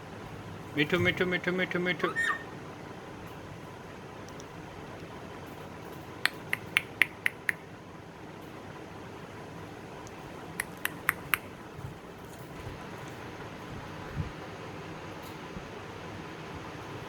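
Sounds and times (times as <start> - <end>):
sharp clicks: 4.3 - 5.1, 6.2 - 7.6, 10.0 - 11.6.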